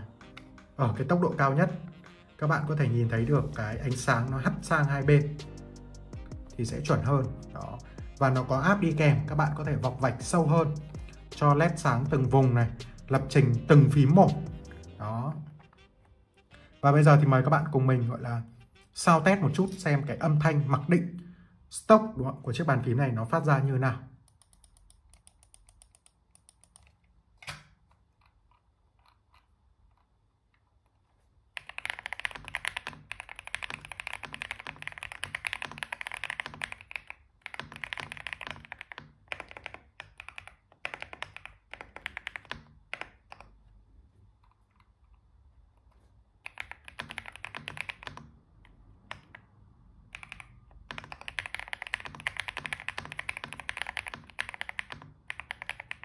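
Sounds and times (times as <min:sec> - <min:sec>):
mechanical keyboard typing: 0:24.3 - 0:27.6, 0:31.5 - 0:43.6, 0:46.4 - 0:56.0.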